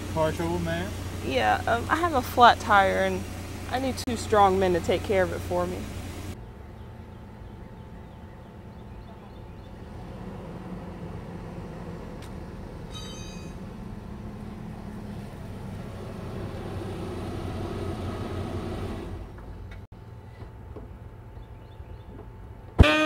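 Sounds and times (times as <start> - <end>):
vehicle rumble: 0.0 - 22.8.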